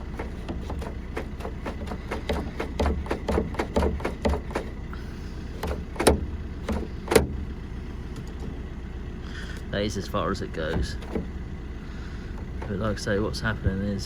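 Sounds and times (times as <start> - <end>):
lock mechanism clicking and knocking: 0.0 - 4.8, 5.6 - 7.4.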